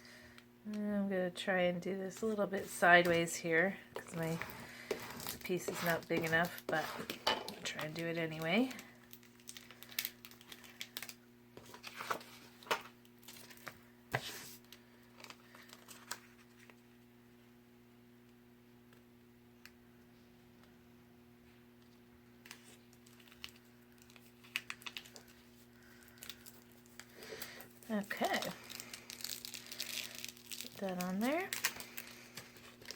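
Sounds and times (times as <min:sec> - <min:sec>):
faint steady hum: 0:00.0 - 0:32.9
paper pieces tapping and rustling: 0:04.0 - 0:08.8.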